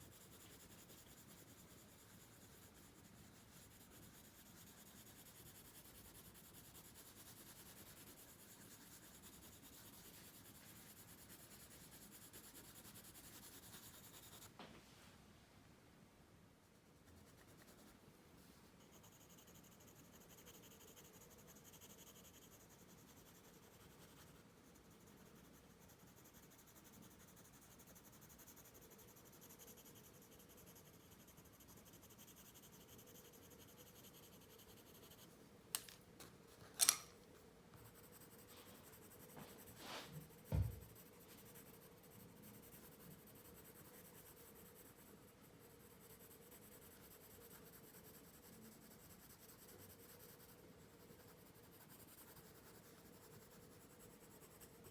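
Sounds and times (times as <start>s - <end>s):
pencil scratching on paper: 0.0s - 14.5s, 16.7s - 35.4s, 37.8s - 54.9s
sharp clicks: 36.8s - 37.1s.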